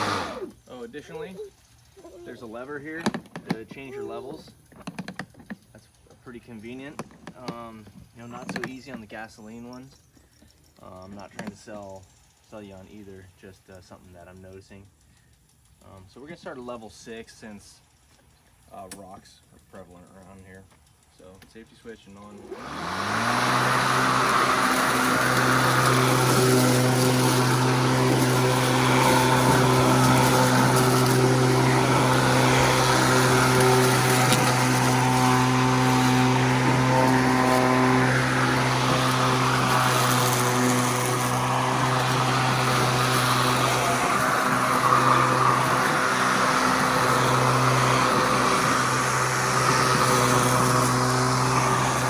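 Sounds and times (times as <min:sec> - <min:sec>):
electric lawn mower humming: 0:00.0 - 0:09.1, 0:22.2 - 0:52.0.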